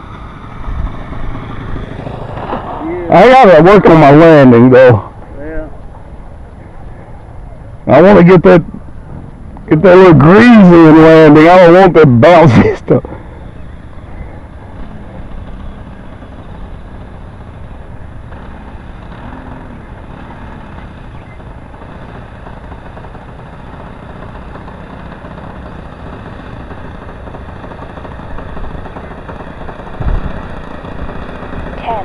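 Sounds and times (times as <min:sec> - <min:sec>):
model plane engine running: 0:00.0 - 0:32.0
wind noise on microphone: 0:30.0 - 0:30.4.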